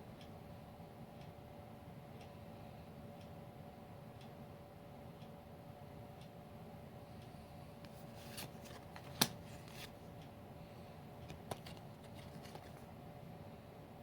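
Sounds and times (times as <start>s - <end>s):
cards rustling and clicking: 7.9s - 10.0s, 11.2s - 12.9s.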